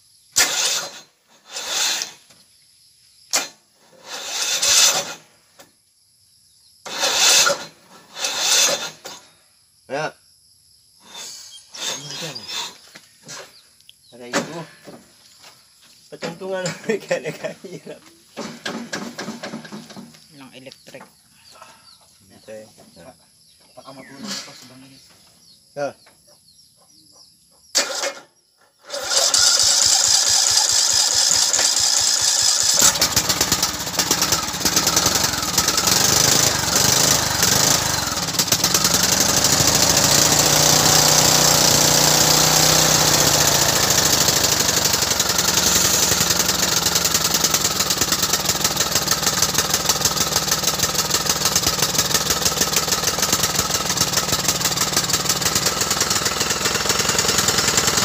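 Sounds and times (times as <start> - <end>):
lawn mower engine running: 0.4 - 2.2, 3.4 - 5.3, 6.9 - 9.2, 18.4 - 20.2, 27.8 - 28.2, 28.8 - 58.0.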